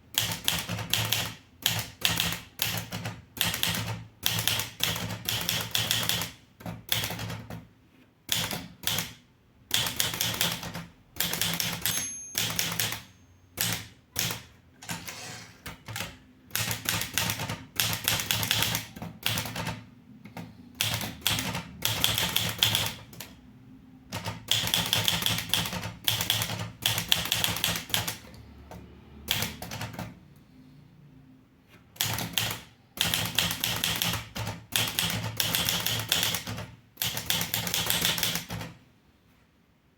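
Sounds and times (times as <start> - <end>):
typewriter key strikes: 9.8 - 15.0.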